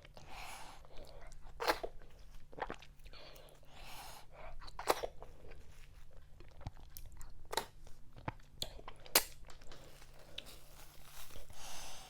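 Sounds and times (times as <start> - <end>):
person chewing with wet smacks: 0.0 - 10.6.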